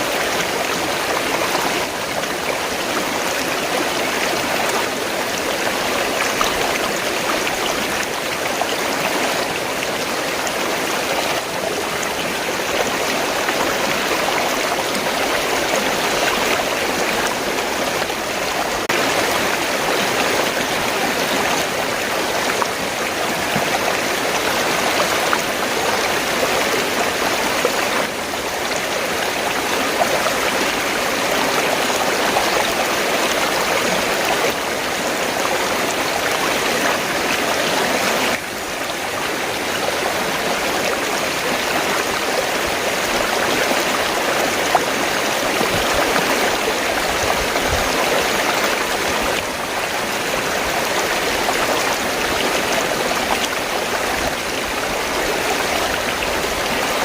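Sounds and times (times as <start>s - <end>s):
river water rushing: 0.0s - 57.0s.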